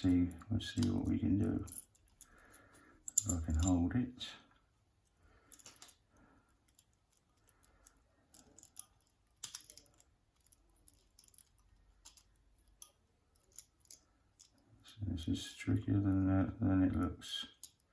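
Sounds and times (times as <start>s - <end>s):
lock picking clicks and scrapes: 0.7s - 3.8s, 5.0s - 15.0s, 17.5s - 17.9s.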